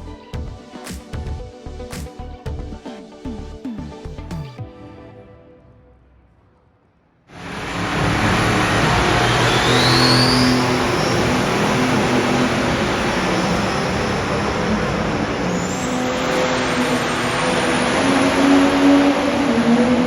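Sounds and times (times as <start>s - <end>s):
tractor engines roaring: 7.3s - 20.0s
rising whistle: 7.4s - 20.0s.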